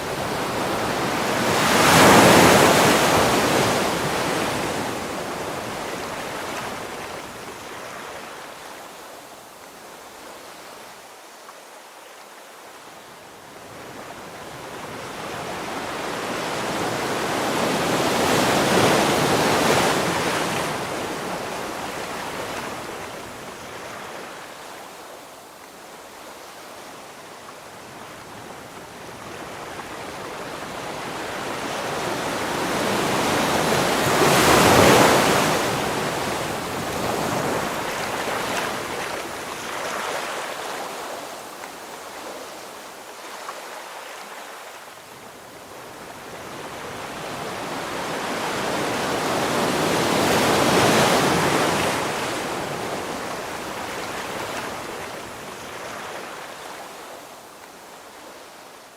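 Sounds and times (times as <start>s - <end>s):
ocean waves crashing: 0.0s - 6.5s, 30.6s - 42.3s.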